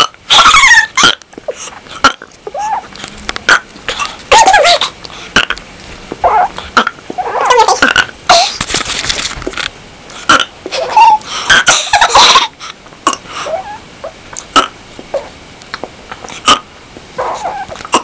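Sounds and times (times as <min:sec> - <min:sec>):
person burping: 0:14.5 - 0:14.8.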